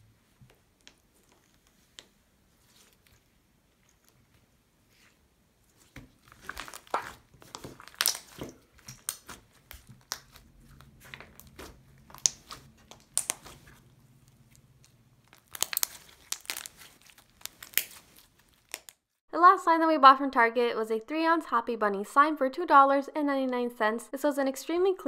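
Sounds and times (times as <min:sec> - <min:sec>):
slime squished in hands: 0:05.7 - 0:19.0.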